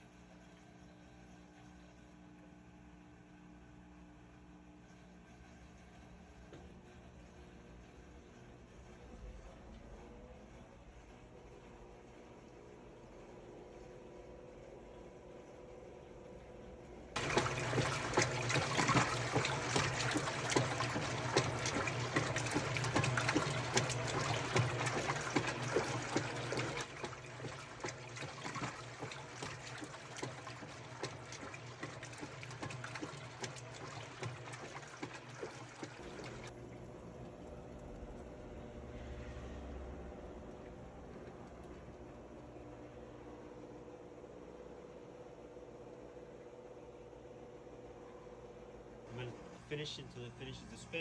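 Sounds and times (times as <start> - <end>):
washer motor hum: 0.0 - 51.0
water splashing into washer tub: 17.2 - 36.5.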